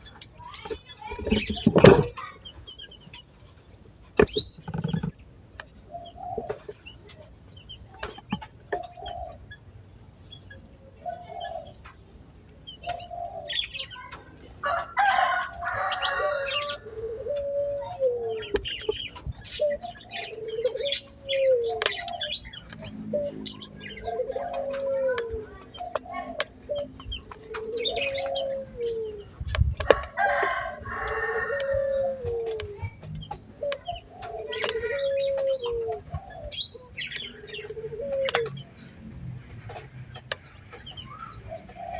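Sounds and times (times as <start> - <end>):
birds chirping: 0.0 - 41.9
birds falling calls: 0.0 - 41.9
rooster crowing: 14.6 - 16.9, 29.8 - 32.1.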